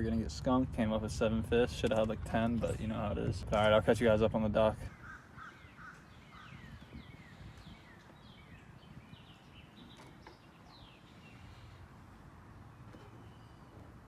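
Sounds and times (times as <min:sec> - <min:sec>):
low steady rumble: 0:00.0 - 0:04.9
birds chirping: 0:02.3 - 0:14.0.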